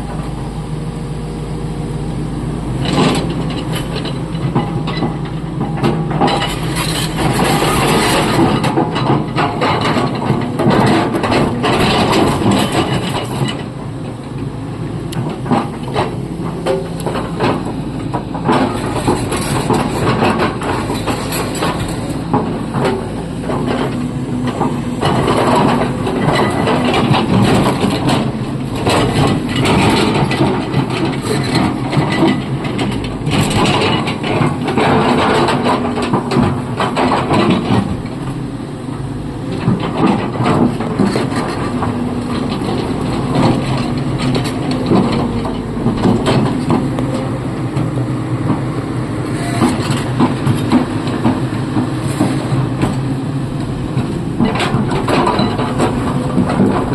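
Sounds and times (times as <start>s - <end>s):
excavator diesel engine under load: 0.0s - 56.9s
metal clanks and rattles: 2.8s - 13.8s, 15.2s - 38.3s, 39.5s - 48.6s, 49.4s - 56.9s.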